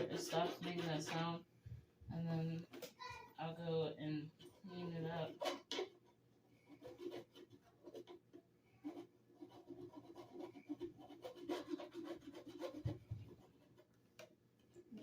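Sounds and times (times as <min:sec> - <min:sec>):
hands rubbing and scratching plastic: 0:05.3 - 0:14.3.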